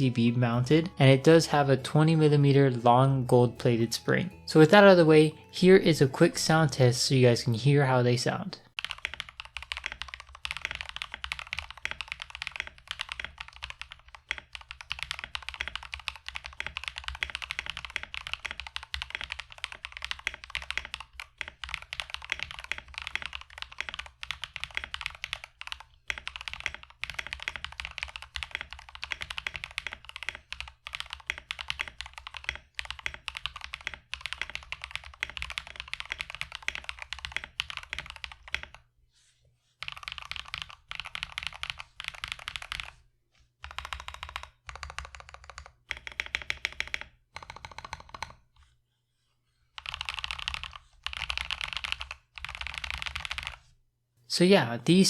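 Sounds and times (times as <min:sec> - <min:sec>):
mechanical keyboard typing: 0:08.8 - 0:38.8, 0:39.8 - 0:43.0, 0:43.6 - 0:48.4, 0:49.8 - 0:53.6.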